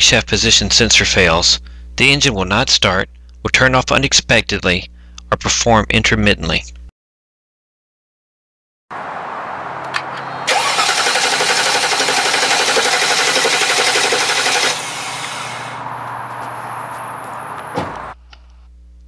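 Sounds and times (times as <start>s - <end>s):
starter motor cranking engine: 10.5s - 15.8s.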